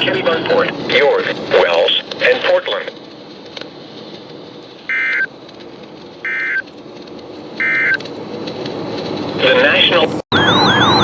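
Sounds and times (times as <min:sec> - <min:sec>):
radio hiss: 0:00.0 - 0:03.0.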